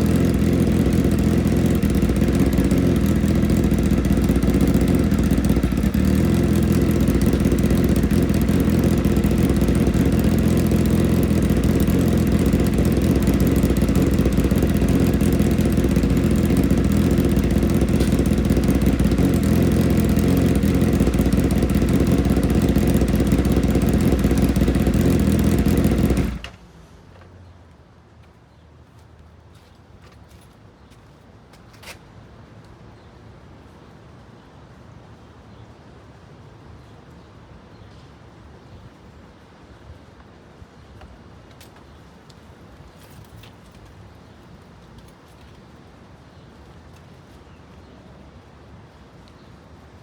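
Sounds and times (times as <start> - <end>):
motorcycle engine idling: 0.0 - 27.3.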